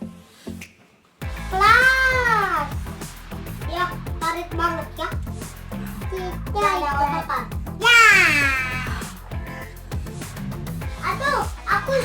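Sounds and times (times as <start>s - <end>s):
background music with beat: 0.0s - 12.0s
high falling vocal call: 7.8s - 9.1s.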